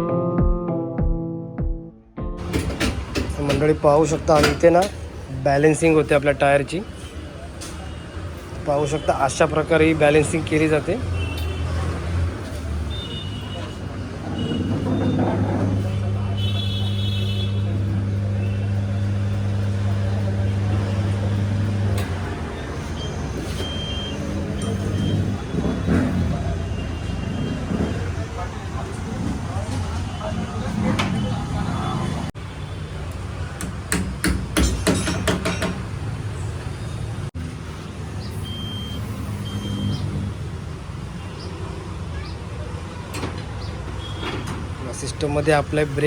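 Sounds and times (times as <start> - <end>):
wheel balancer spinning tyre: 12.4 - 32.4
balancing machine humming: 14.5 - 23.2
hammer knocks: 33.6 - 35.9
short high beeps: 38.4 - 40.0.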